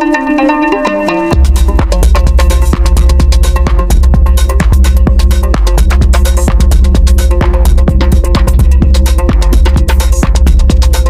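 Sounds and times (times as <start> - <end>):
electronic dance music: 0.0 - 11.0.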